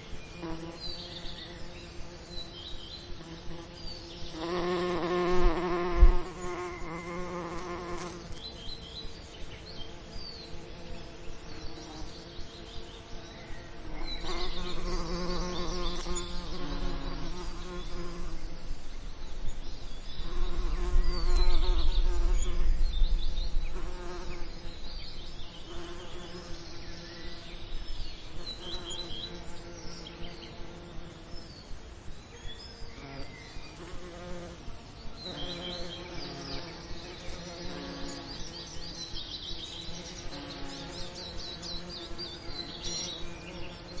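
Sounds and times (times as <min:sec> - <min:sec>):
bees buzzing: 0:00.4 - 0:08.8, 0:09.8 - 0:18.6, 0:20.1 - 0:22.8, 0:23.6 - 0:24.8, 0:25.5 - 0:27.4, 0:33.0 - 0:44.0.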